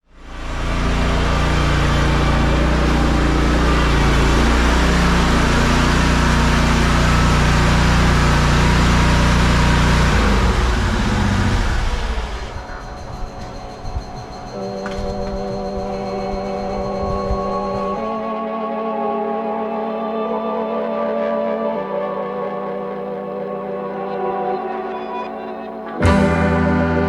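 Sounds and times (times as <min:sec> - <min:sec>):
engine running with low hum: 0:00.1 - 0:18.3.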